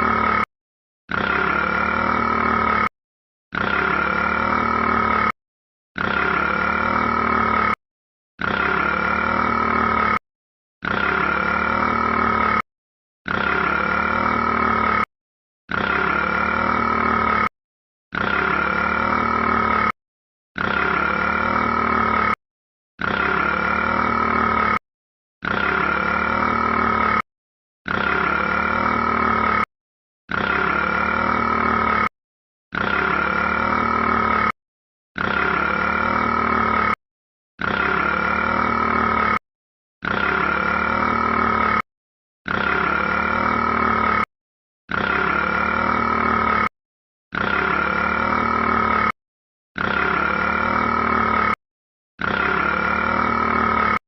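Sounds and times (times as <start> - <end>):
rat burping: 1.1 - 2.9, 3.5 - 5.4, 6.0 - 7.8, 8.4 - 10.2, 10.8 - 15.1, 15.7 - 17.5, 18.1 - 20.0, 20.6 - 22.4, 23.0 - 24.8, 25.4 - 29.7, 30.3 - 32.1, 32.7 - 34.6, 35.2 - 37.0, 37.6 - 39.4, 40.0 - 44.3, 44.9 - 46.7, 47.3 - 49.2, 49.8 - 51.6, 52.2 - 54.0.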